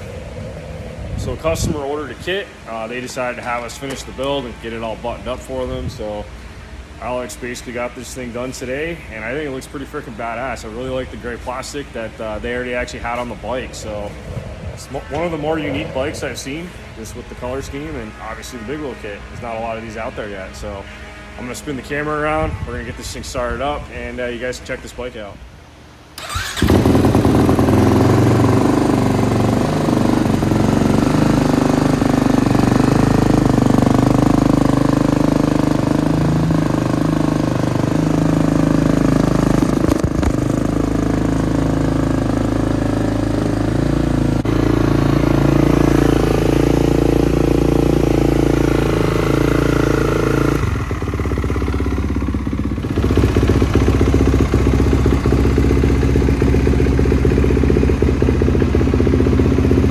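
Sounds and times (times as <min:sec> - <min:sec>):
motorcycle engine running: 0:26.2 - 0:59.9.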